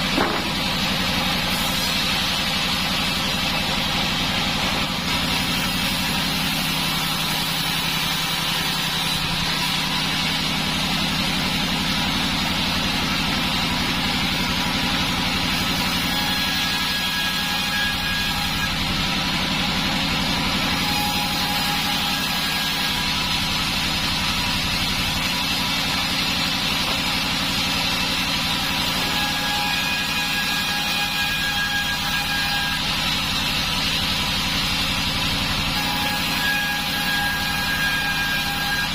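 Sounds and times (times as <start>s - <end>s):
band sawmill running: 0.0s - 38.9s.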